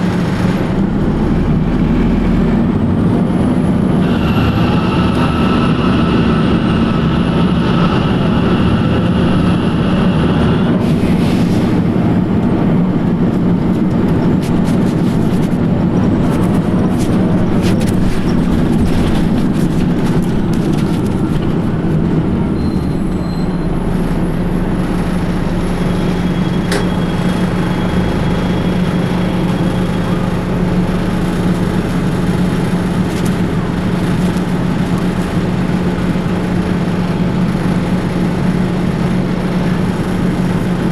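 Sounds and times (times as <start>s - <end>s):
diesel bus engine droning: 0.0s - 40.9s
high belt squeal: 4.0s - 10.8s, 22.6s - 30.6s.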